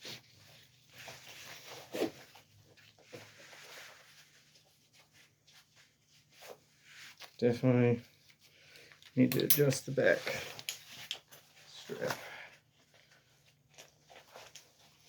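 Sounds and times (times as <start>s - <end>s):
harness webbing and buckles rustling: 12.8s - 15.0s.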